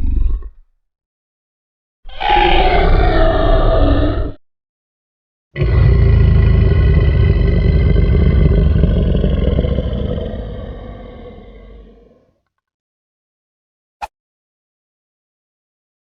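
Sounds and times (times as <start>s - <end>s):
low rough monster growl: 2.1s - 4.4s, 5.6s - 12.4s
monster roar: 2.1s - 4.4s, 5.6s - 12.3s.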